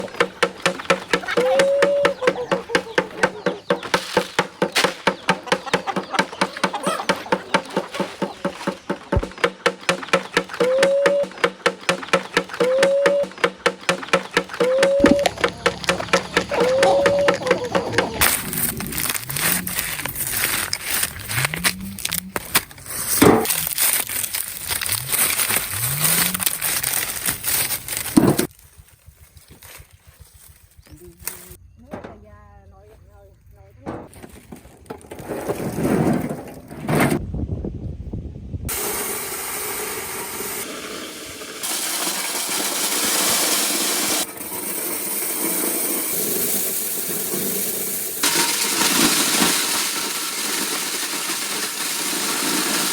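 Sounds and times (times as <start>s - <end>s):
dry plant material rustling: 0.0s - 9.3s, 15.1s - 31.6s
chickens pecking clicks: 0.0s - 22.8s.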